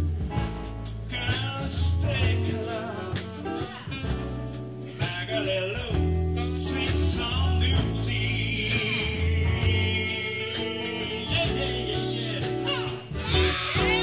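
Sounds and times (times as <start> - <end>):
bass: 0.0 - 14.0
drums: 0.0 - 14.0
live soul band playing: 0.0 - 14.0
person singing: 4.9 - 14.0.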